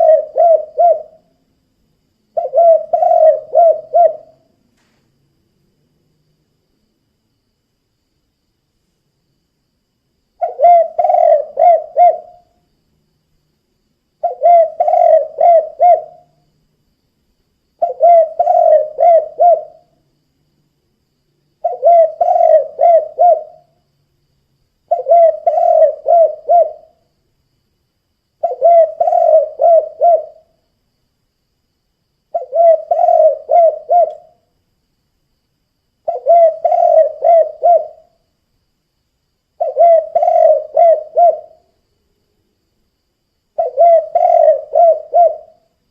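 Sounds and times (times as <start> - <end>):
dove cooing: 0.0 - 1.3, 2.4 - 4.5, 10.4 - 12.5, 14.2 - 16.4, 17.8 - 19.9, 21.6 - 23.8, 24.9 - 27.0, 28.4 - 30.5, 32.3 - 34.4, 36.0 - 38.2, 39.6 - 41.6, 43.6 - 45.6.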